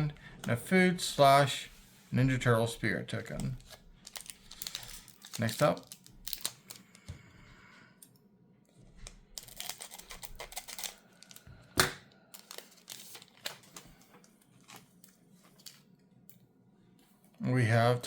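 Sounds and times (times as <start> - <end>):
foil wrapper tearing and crinkling: 3.6 - 7.0, 9.0 - 11.4, 12.3 - 13.9.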